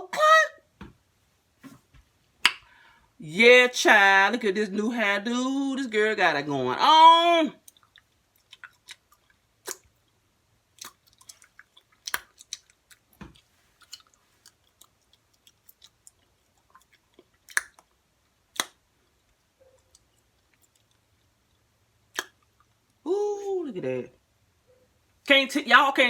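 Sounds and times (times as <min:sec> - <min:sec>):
open-mouthed chewing: 0:07.6 - 0:23.0.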